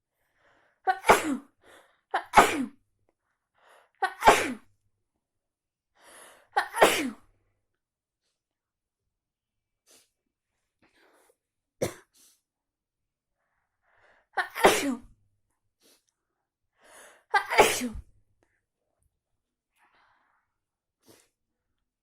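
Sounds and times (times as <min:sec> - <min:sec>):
person sneezing: 0:00.9 - 0:01.5, 0:02.2 - 0:02.8, 0:04.0 - 0:04.6, 0:06.6 - 0:07.2, 0:14.4 - 0:15.1, 0:17.4 - 0:18.1
quick in-breath: 0:06.0 - 0:06.5, 0:16.8 - 0:17.3.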